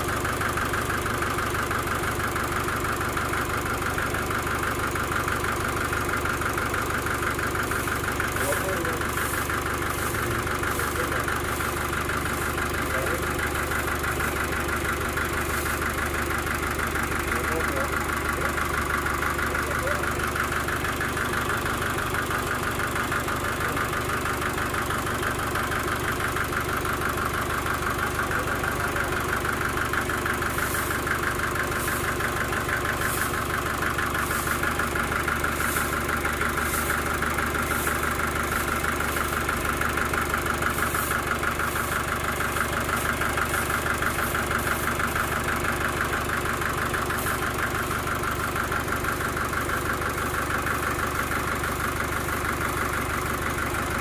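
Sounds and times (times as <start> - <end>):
sawmill engine running: 0.0 - 54.0.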